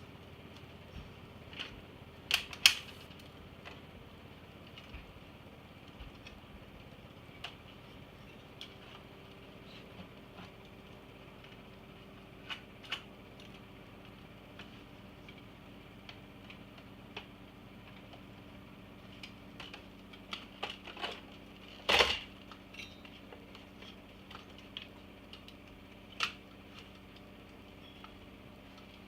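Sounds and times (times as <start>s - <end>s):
clatter of tools and screws: 19.2s - 27.0s.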